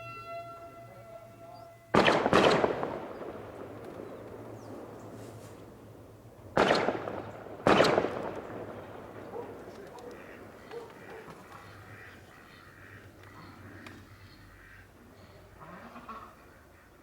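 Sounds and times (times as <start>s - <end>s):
loud sharp bangs: 1.9s - 11.1s.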